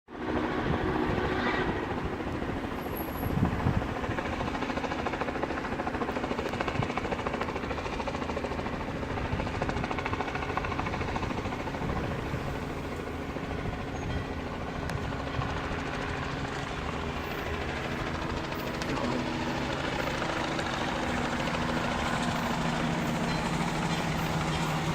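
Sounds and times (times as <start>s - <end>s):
train noise: 0.1s - 24.9s
steam locomotive exhaust beat: 17.0s - 24.9s.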